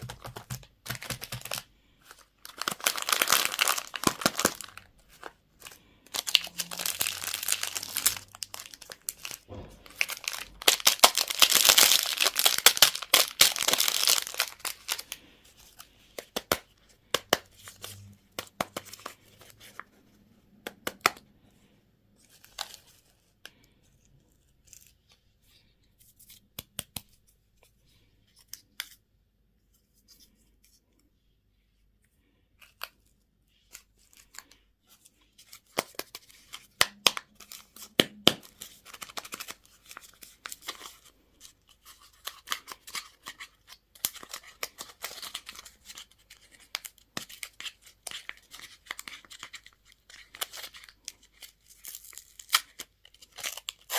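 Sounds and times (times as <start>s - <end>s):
packaging tearing and crinkling: 0.0s - 15.1s, 41.8s - 53.9s.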